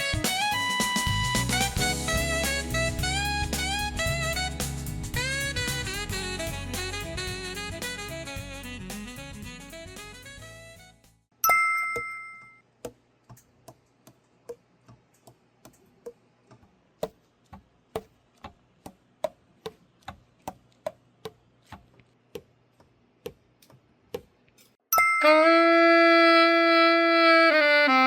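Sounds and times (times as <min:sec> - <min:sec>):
bright metallic ding: 0:11.4 - 0:12.6, 0:24.9 - 0:25.2.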